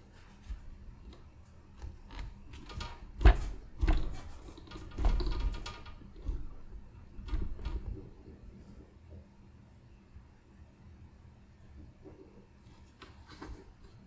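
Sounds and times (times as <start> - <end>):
equipment knocks and rattles: 0.0 - 8.3.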